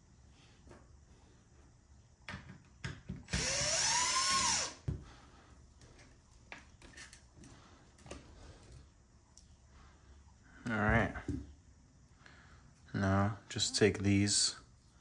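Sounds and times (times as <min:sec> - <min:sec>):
power drill whirring: 0:03.3 - 0:04.8.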